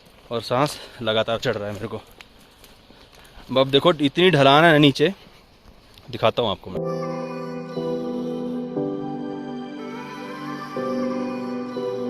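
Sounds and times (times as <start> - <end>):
sustained synth chords: 6.8 - 12.0.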